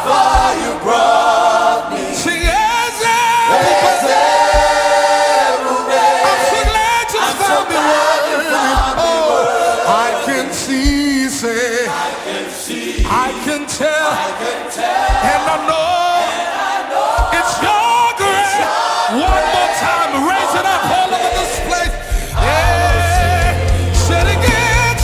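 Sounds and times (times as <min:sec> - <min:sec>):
voices singing gospel music: 0:00.0 - 0:25.0
low drum thump: 0:00.3 - 0:00.9, 0:02.2 - 0:03.0, 0:03.6 - 0:05.2, 0:06.6 - 0:07.2, 0:08.8 - 0:09.2, 0:10.8 - 0:11.3, 0:13.0 - 0:13.4, 0:15.0 - 0:15.5, 0:17.2 - 0:17.6, 0:19.3 - 0:19.7, 0:21.3 - 0:25.0.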